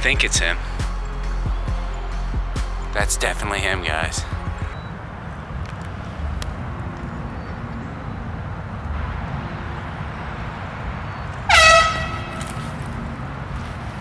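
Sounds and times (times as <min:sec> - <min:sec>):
air horn blast: 0:00.0 - 0:04.8, 0:11.5 - 0:13.0.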